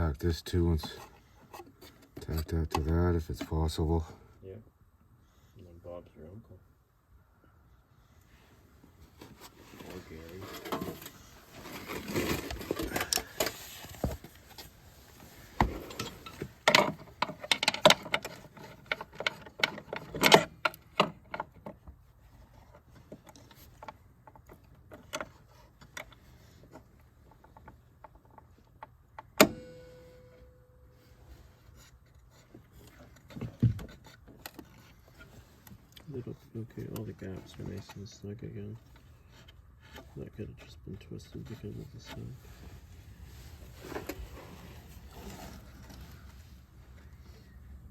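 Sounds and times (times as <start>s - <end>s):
sharp ringing metal strike: 29.5s - 30.8s.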